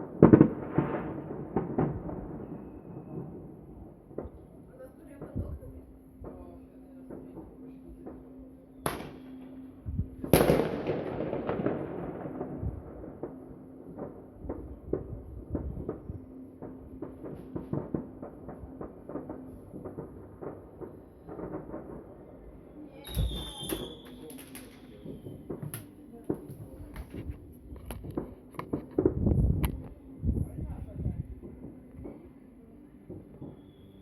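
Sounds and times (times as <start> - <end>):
fireworks bangs and booms: 0.0 - 32.4
fireworks crackling pops: 8.8 - 9.4, 10.1 - 22.1, 23.0 - 32.4.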